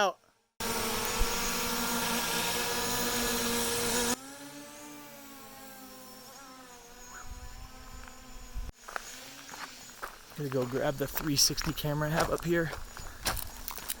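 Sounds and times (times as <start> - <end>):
drone propellers buzzing: 0.6 - 10.4.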